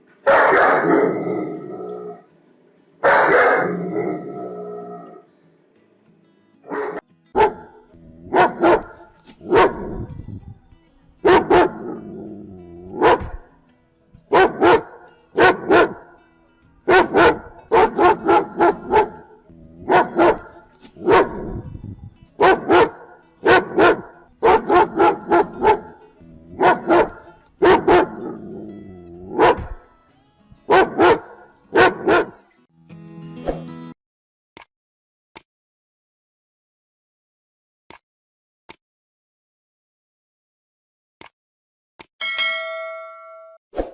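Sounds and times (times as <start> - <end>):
dog barking aggressively: 0.2 - 1.2, 3.0 - 4.2, 6.7 - 10.1, 11.2 - 12.2, 12.9 - 13.4, 14.3 - 16.1, 16.9 - 21.6, 22.4 - 28.5, 29.2 - 29.8, 30.7 - 32.4.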